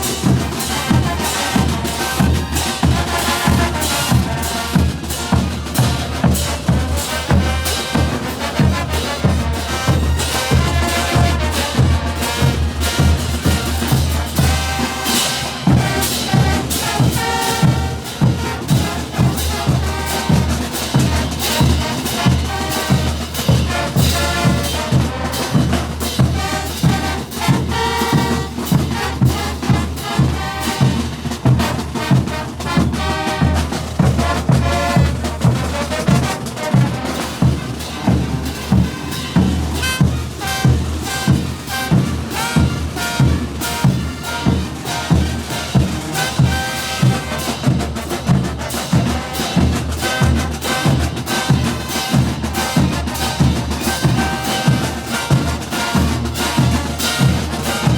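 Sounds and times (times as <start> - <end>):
bass drum and percussion beat: 0.0 - 57.9
brass band playing: 0.0 - 57.9.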